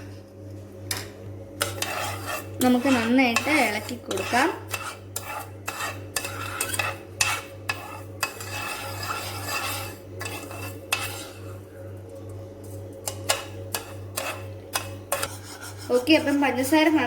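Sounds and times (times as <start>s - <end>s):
spoon clinking and scraping pan: 0.9s - 11.5s, 13.1s - 15.8s.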